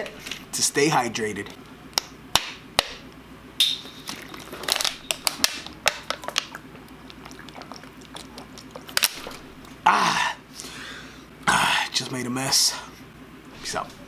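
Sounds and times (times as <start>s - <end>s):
drink sloshing: 4.0s - 9.8s
person gulping a drink: 5.4s - 10.4s.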